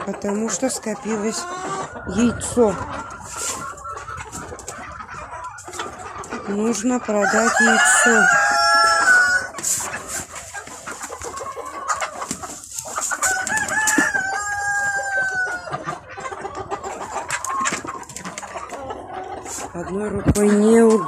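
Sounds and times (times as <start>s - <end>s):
chickens clucking: 0.0s - 21.0s
rooster crowing: 7.2s - 9.5s, 13.3s - 15.6s.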